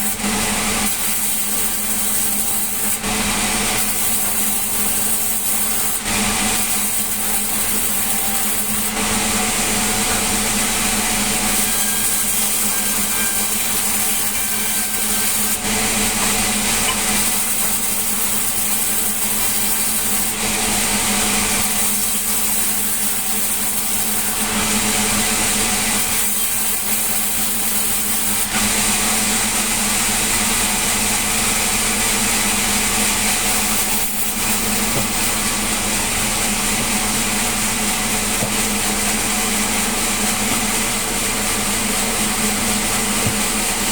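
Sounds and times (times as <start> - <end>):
sawmill saw cutting log: 0.0 - 43.9.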